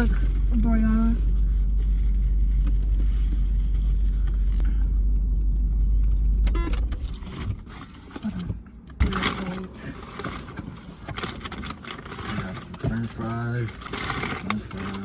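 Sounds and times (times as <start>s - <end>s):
car cabin low rumble: 0.0s - 9.9s
keys jangling: 7.0s - 8.4s.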